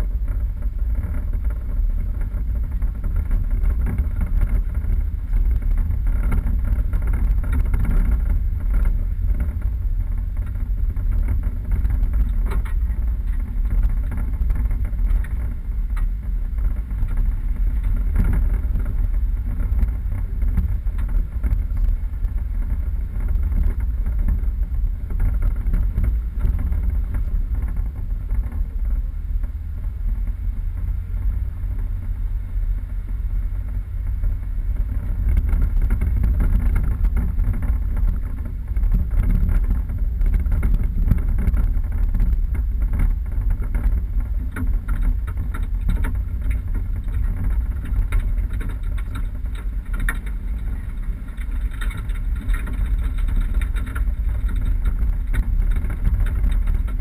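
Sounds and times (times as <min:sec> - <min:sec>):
vehicle engine and tyres rumbling: 0:00.0 - 0:57.0
knocks and rattles: 0:35.1 - 0:57.0.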